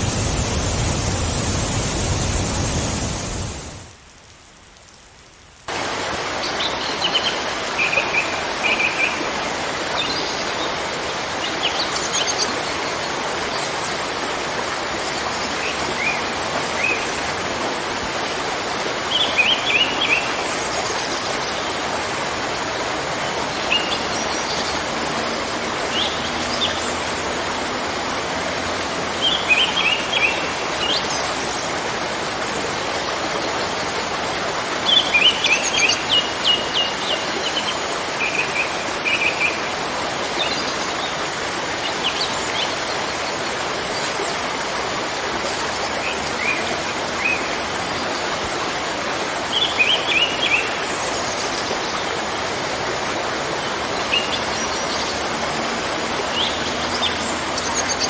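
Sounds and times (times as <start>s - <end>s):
waterfall rushing: 0.0s - 4.0s, 5.7s - 58.0s
birds chirping: 5.8s - 11.9s.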